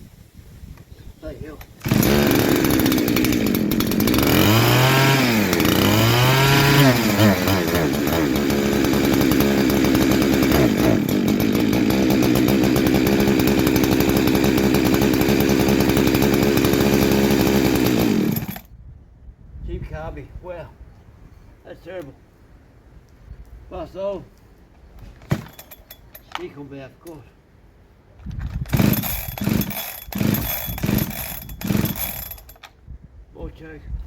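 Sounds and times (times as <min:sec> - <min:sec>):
chainsaw engine revving: 0:01.7 - 0:18.7, 0:28.7 - 0:32.5.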